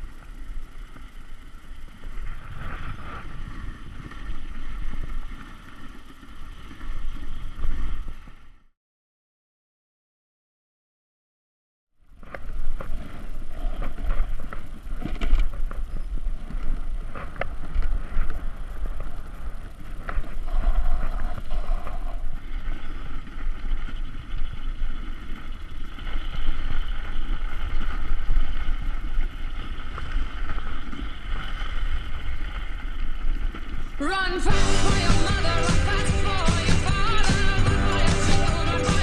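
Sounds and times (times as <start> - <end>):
wind rumbling on microphone: 0.0 - 8.7, 12.0 - 39.0
steady higher hum: 34.0 - 39.0.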